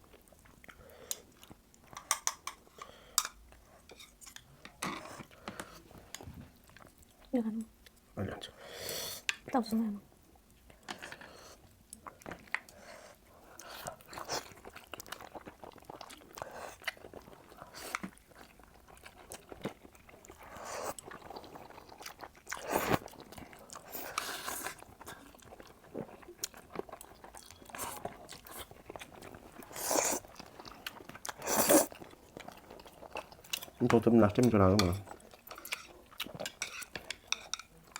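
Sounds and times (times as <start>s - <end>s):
person chewing wetly: 10.5s - 37.9s.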